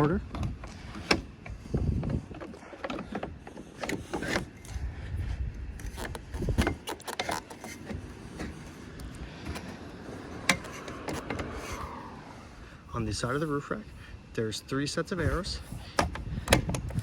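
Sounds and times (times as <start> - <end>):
low handling rumble: 0.0 - 6.9, 7.9 - 14.3.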